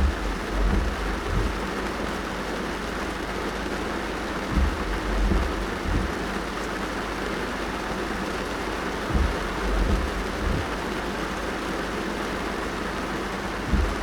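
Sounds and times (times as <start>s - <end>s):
low thuds: 0.0s - 1.7s, 4.5s - 6.3s, 9.1s - 10.8s, 13.6s - 14.0s
rain on car roof: 0.0s - 14.0s.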